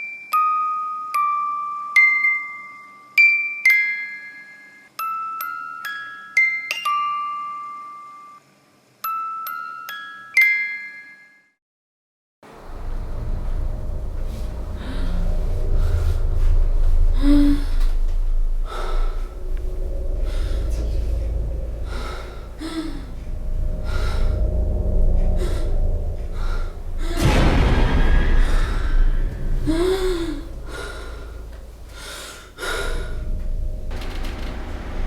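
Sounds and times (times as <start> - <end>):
low rumble: 12.5 - 35.0.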